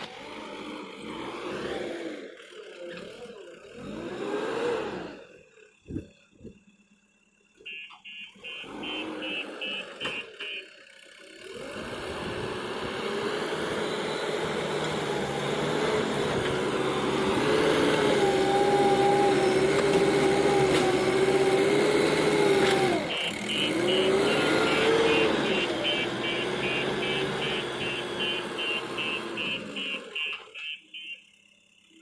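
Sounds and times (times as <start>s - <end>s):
diesel engine running under load: 0.0s - 30.4s
high warning beeps: 7.7s - 10.6s, 23.1s - 31.2s.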